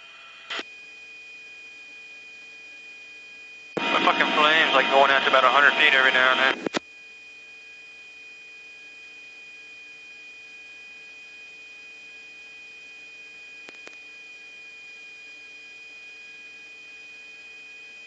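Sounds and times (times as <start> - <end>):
low hum: 3.8 - 6.7
high electronic whine: 3.8 - 6.8
radio static hiss: 3.8 - 6.8.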